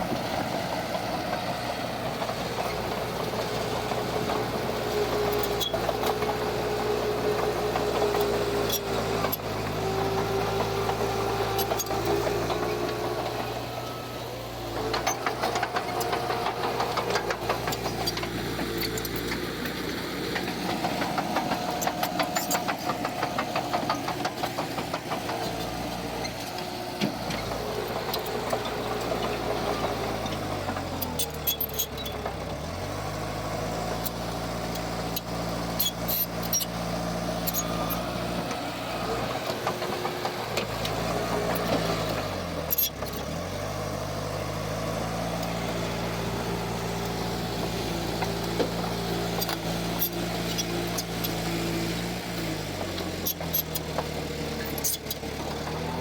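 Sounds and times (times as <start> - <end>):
heavy diesel engine working: 0.0 - 56.0
metal clanks and rattles: 14.8 - 32.5.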